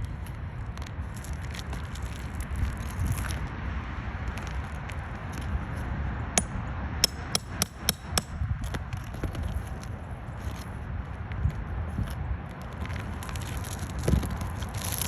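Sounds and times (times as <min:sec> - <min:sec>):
steady low rumble: 0:00.0 - 0:15.0
hammer striking nails: 0:06.4 - 0:08.4.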